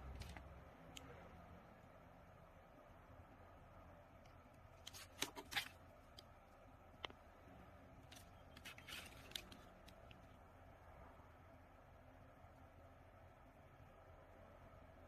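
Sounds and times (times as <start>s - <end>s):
rustling: 8.0s - 10.3s
small objects clicking and scraping: 8.0s - 10.3s.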